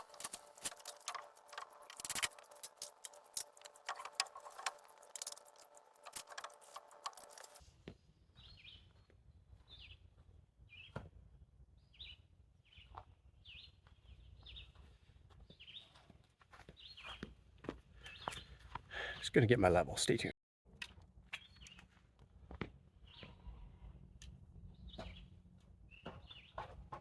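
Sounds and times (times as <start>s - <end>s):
rapid clicking: 0.0s - 7.6s.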